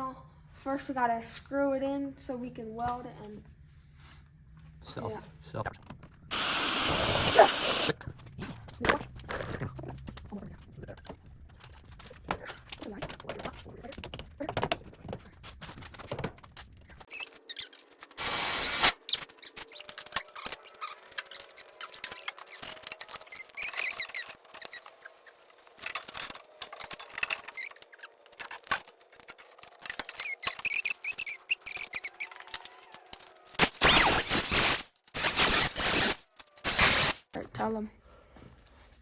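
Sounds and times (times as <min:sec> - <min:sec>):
loud burst of noise: 0:06.3 - 0:07.9, 0:18.2 - 0:19.0, 0:33.6 - 0:37.3
clicks taps and squeaks on metal: 0:19.1 - 0:33.6.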